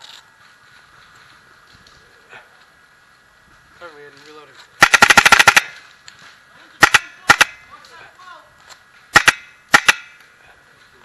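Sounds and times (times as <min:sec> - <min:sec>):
airsoft rifle firing bursts: 0:04.8 - 0:05.8, 0:06.8 - 0:07.7, 0:09.1 - 0:10.2.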